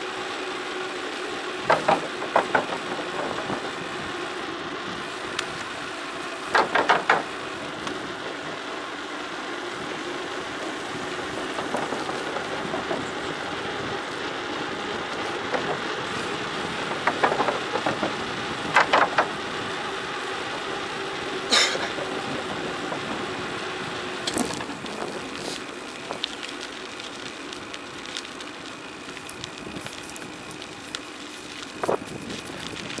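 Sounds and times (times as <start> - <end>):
tyres crunching on gravel: 0.0 - 33.0
sharp knocks: 1.6 - 3.5, 6.5 - 7.3
rattles: 6.5 - 8.4, 10.4 - 19.5.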